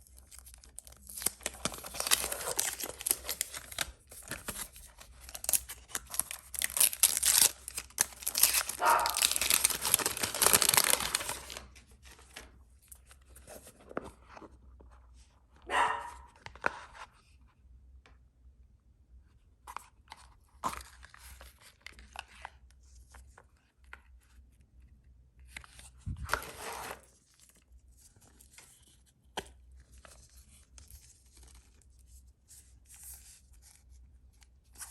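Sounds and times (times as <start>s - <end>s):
packaging crinkling and tearing: 0.0s - 13.6s
dog barking: 8.8s - 9.2s, 15.6s - 16.4s.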